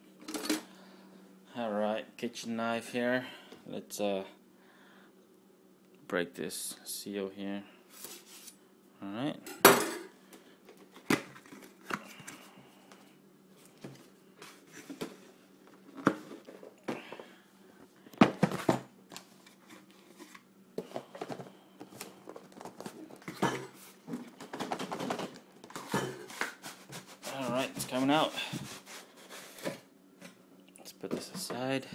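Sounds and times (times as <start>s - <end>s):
knocks of box being handled: 18.2s - 18.9s.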